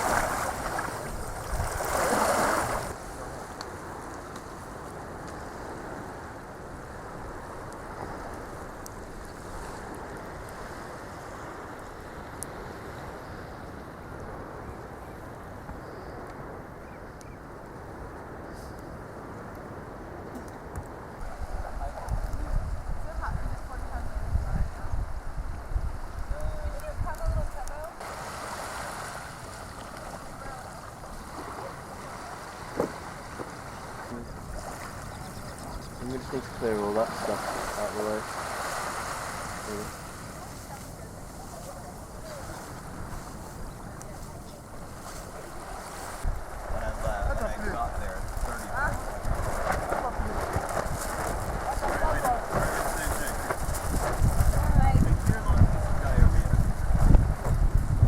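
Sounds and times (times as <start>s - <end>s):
water rushing: 0.0s - 3.5s, 27.8s - 50.4s
water noise: 0.0s - 18.4s, 19.0s - 58.0s
wind: 0.0s - 58.0s
wind rushing: 44.6s - 58.0s.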